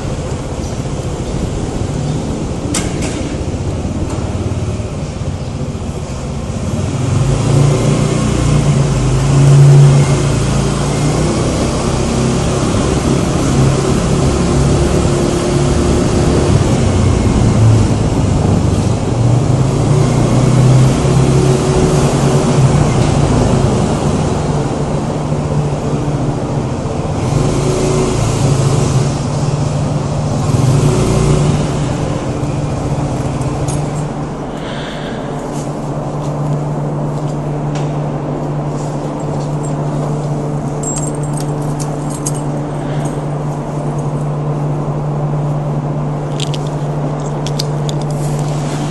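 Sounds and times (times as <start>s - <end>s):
scooter engine running: 0.0s - 34.5s
traffic: 0.0s - 48.9s
wind rush on microphone: 12.6s - 27.6s.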